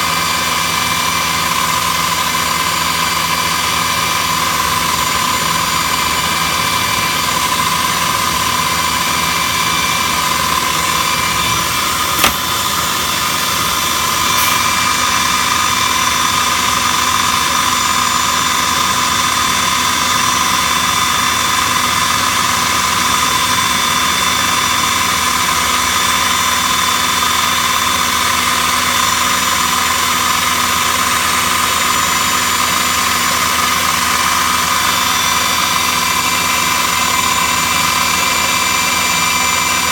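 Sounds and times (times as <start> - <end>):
router spindles whining: 0.1 - 39.9
sharp click: 12.2 - 12.5.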